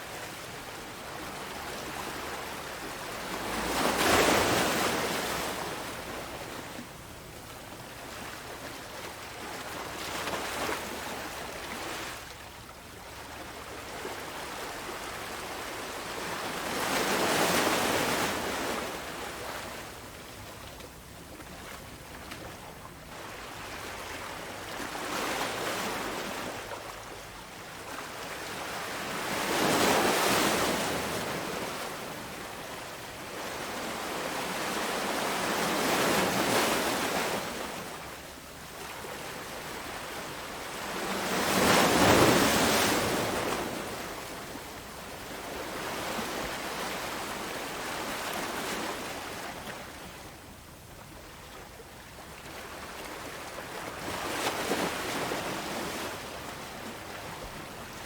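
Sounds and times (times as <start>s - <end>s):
sea waves breaking on shore: 0.0s - 7.4s, 22.5s - 50.4s.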